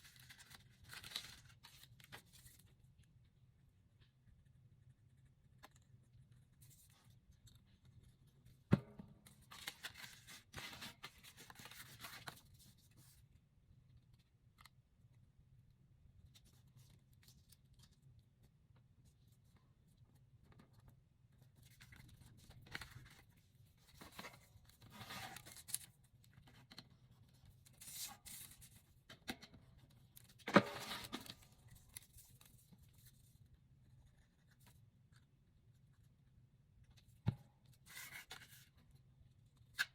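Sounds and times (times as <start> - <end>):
paper rustling: 0.0 - 2.6, 9.4 - 13.1.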